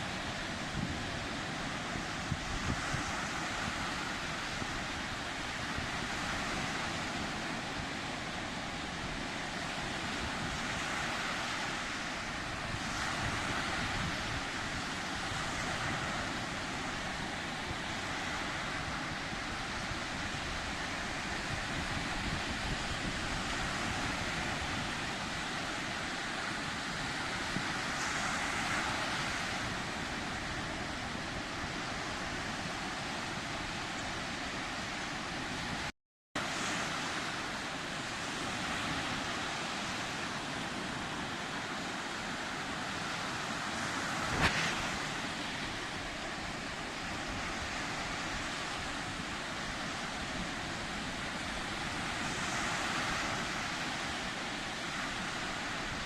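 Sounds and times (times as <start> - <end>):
waves washing in: 0.0 - 56.0
wind noise on microphone: 0.0 - 56.0.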